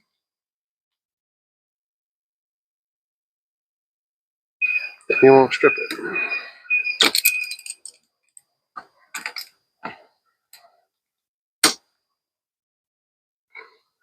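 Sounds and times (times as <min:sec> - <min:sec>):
sharp loud click: 0:11.6 - 0:11.8.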